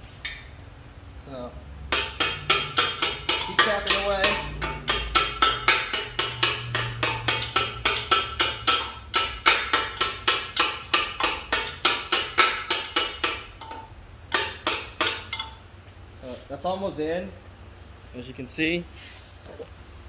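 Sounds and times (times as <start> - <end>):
hammer tapping metal punch: 1.9 - 15.6.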